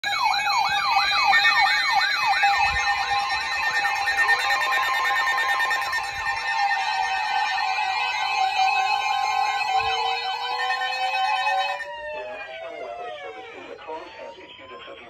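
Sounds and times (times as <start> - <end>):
electronic siren yelping: 0.0 - 15.0.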